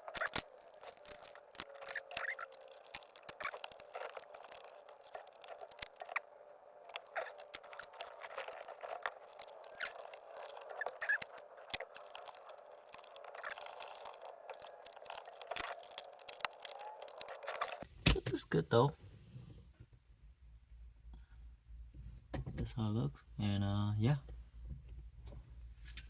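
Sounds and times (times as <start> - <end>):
plastic parts clicking and scraping: 0.0 - 17.9.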